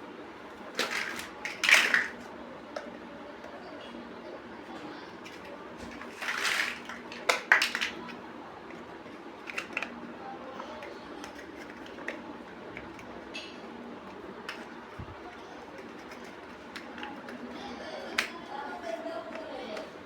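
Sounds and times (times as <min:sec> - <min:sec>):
plastic bricks rustling: 0:00.7 - 0:02.3, 0:05.2 - 0:10.0, 0:14.4 - 0:17.6
plastic bricks clicking: 0:00.8 - 0:02.2, 0:05.2 - 0:08.2, 0:09.4 - 0:10.0, 0:14.5 - 0:17.5.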